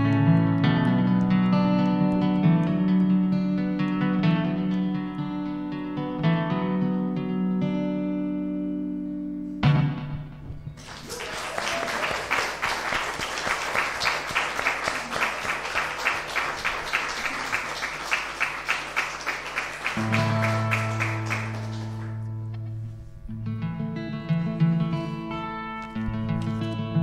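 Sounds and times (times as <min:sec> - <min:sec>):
audience applauding: 0:10.8 - 0:22.4.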